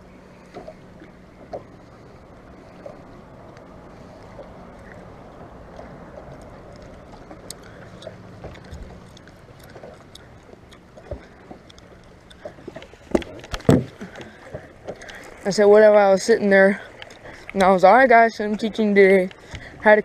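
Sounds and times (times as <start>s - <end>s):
boat engine low hum: 0.0s - 20.0s
light clicks: 2.8s - 15.3s.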